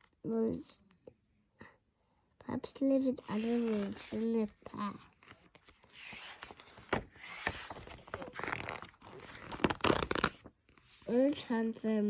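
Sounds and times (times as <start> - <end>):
book pages rustling: 3.1 - 11.3.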